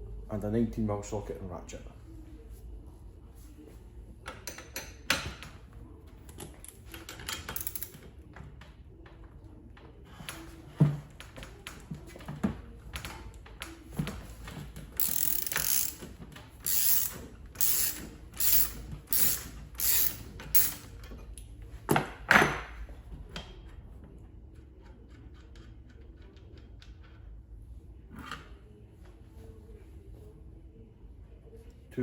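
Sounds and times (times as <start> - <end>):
socket ratchet rasping: 7.5 - 7.9, 15.0 - 20.9.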